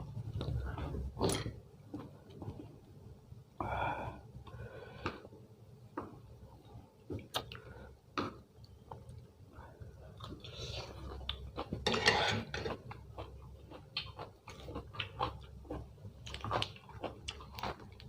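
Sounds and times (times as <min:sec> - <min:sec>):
person breathing: 0:03.6 - 0:05.4
person chewing: 0:07.1 - 0:09.2, 0:10.0 - 0:18.0.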